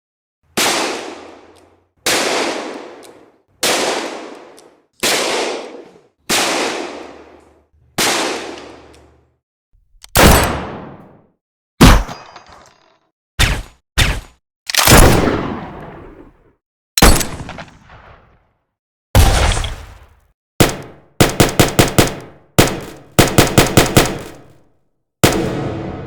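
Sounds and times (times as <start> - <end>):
pistol shots with echo: 20.6 - 24.6, 25.2 - 25.7
sharp gunshot: 25.2 - 26.0.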